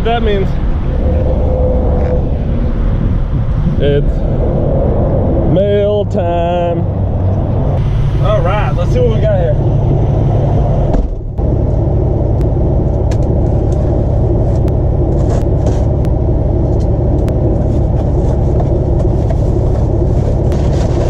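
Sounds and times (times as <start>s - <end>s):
diesel truck engine idling: 5.9s - 21.0s.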